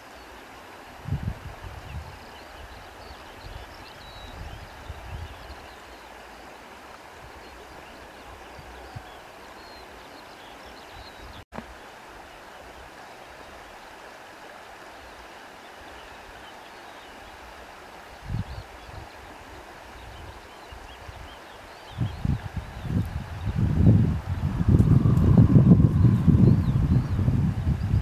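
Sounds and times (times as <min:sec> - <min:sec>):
wind rustling grass: 0:00.0 - 0:06.5, 0:17.4 - 0:28.0
wind buffeting microphone: 0:01.0 - 0:05.6, 0:20.0 - 0:28.0.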